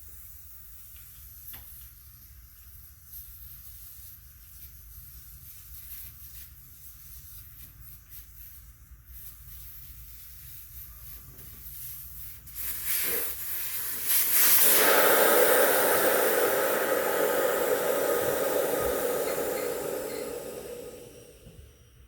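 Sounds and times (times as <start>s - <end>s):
air hissing out of tire valve: 11.8s - 21.8s.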